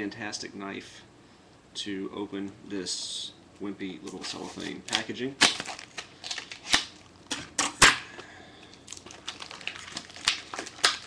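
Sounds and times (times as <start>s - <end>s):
plastic crackling: 4.0s - 8.0s, 8.6s - 11.0s.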